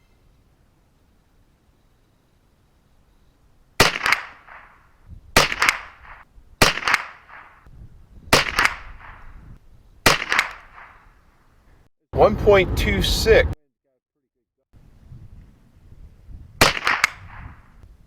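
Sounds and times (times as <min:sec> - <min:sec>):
rifle shots with echo: 0:03.8 - 0:07.7, 0:08.3 - 0:09.3, 0:10.0 - 0:11.2, 0:16.6 - 0:17.7.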